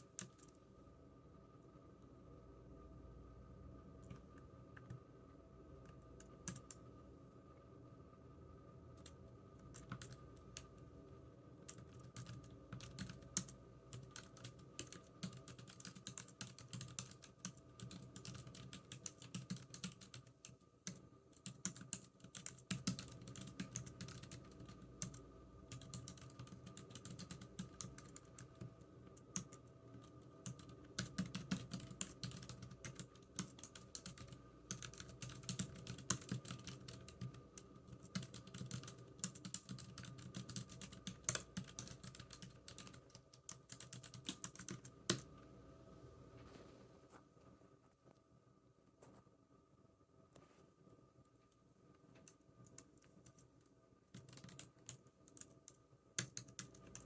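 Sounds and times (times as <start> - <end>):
typing on computer keyboard: 0.0 - 0.6, 5.8 - 6.8, 9.0 - 10.8, 11.6 - 45.3, 52.2 - 57.0
faint room hum: 0.0 - 57.0.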